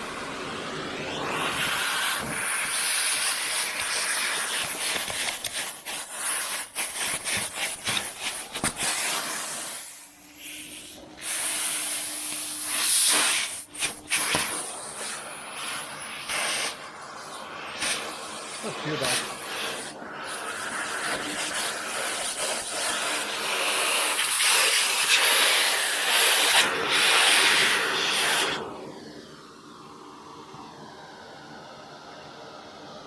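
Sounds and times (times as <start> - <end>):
vacuum cleaner hissing: 0.0 - 33.0.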